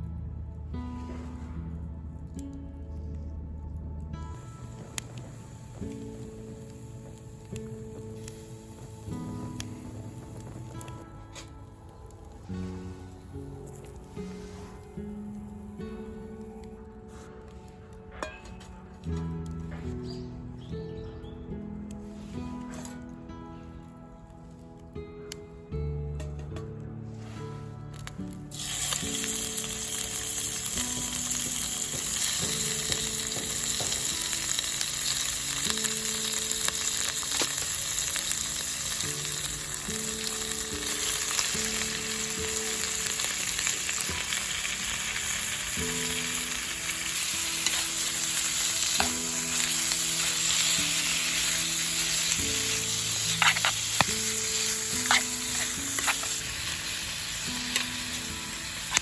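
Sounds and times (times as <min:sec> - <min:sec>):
food sizzling in a frying pan: 0:04.4 - 0:11.1, 0:28.5 - 0:59.0.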